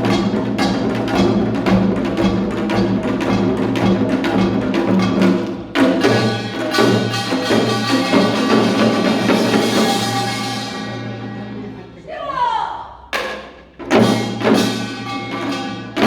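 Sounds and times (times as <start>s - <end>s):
percussion sharp knocks: 0.0s - 10.1s, 13.1s - 16.0s.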